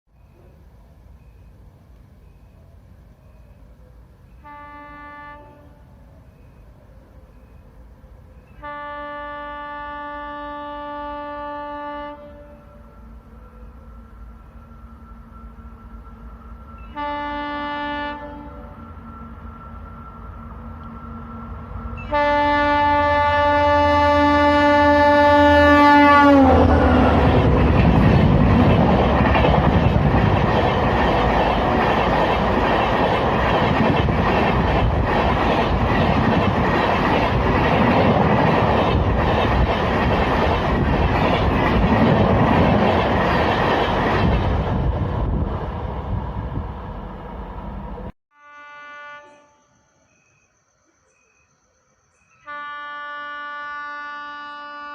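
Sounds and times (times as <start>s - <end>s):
loud locomotive horn: 4.4s - 6.0s, 8.5s - 14.5s, 16.8s - 29.8s, 48.3s - 49.7s, 52.4s - 54.9s
train wheels clickety-clack: 27.2s - 44.7s.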